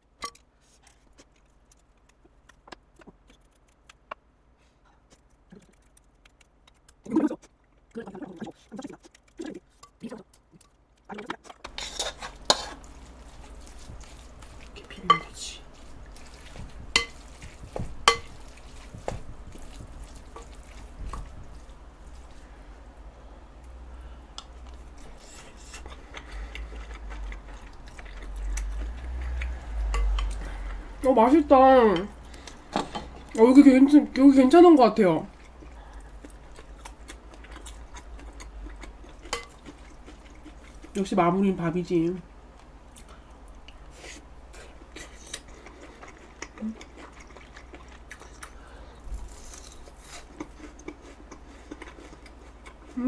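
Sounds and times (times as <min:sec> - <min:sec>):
wet stirring and squishing: 0:00.2 - 0:04.2, 0:05.0 - 0:23.0, 0:24.3 - 0:41.0
spoon scraping a bowl: 0:11.7 - 0:19.0
metal spoon tapping a bowl: 0:15.1 - 0:15.3.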